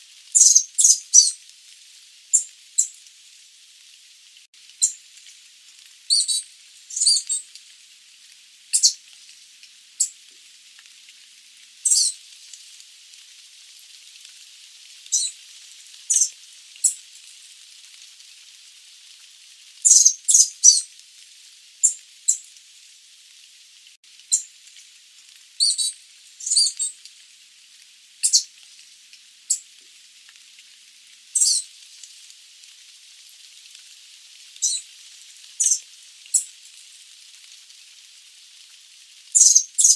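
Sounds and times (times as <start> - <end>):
steady hiss: 0.0 - 39.9.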